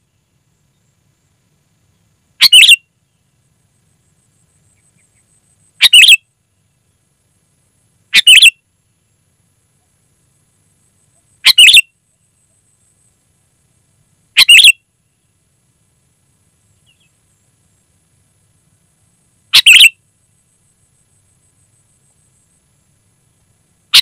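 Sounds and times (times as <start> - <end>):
bird calling: 2.4 - 2.8, 4.8 - 6.2, 8.1 - 8.6, 11.1 - 11.9, 14.4 - 14.8, 19.5 - 20.0.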